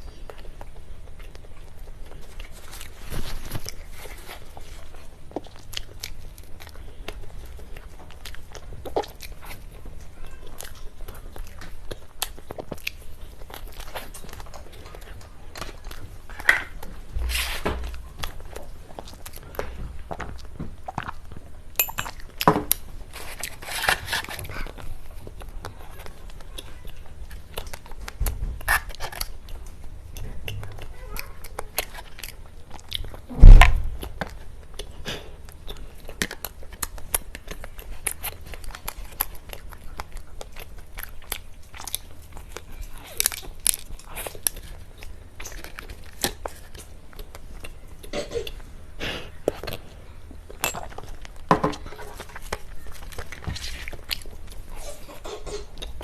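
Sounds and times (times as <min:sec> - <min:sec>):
person chewing cake: 0:00.0 - 0:56.0
loud low thump: 0:33.3 - 0:34.1.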